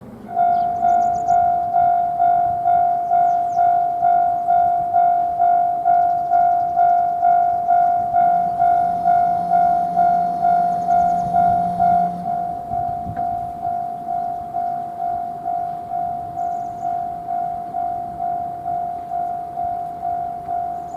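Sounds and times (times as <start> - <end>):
low steady hum: 0.0 - 20.9
level crossing warning bell: 0.2 - 20.9.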